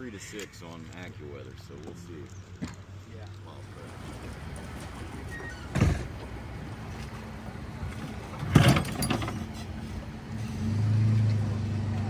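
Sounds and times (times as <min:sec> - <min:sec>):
sharp clunks: 0:03.6 - 0:11.4
low engine hum: 0:03.6 - 0:12.0.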